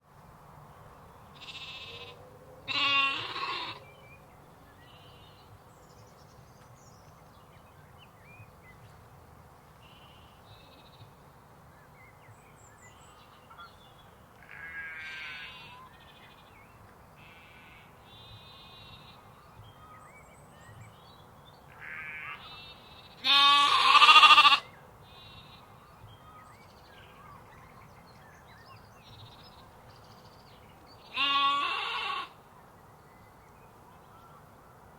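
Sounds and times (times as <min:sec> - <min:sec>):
low background noise: 0:00.0 - 0:34.9
sheep bleating: 0:01.4 - 0:03.8, 0:14.4 - 0:15.8, 0:21.8 - 0:25.7, 0:31.1 - 0:32.4.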